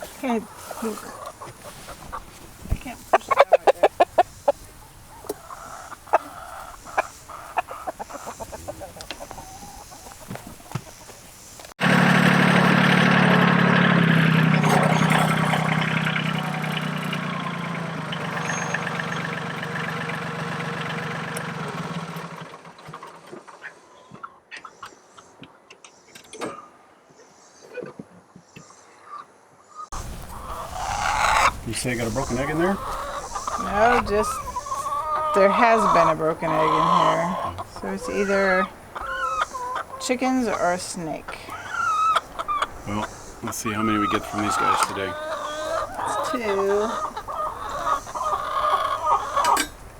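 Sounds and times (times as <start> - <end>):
chickens clucking: 0.0 - 13.7, 14.4 - 25.7, 29.0 - 49.9
engine running loud: 11.8 - 22.7.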